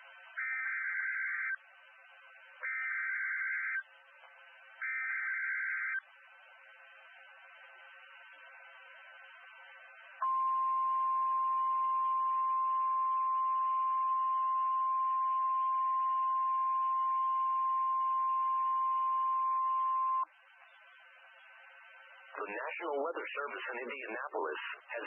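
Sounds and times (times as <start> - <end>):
faint radio hiss: 0.0 - 25.0
steady alarm tone: 0.3 - 1.6, 2.6 - 3.9, 4.8 - 6.1.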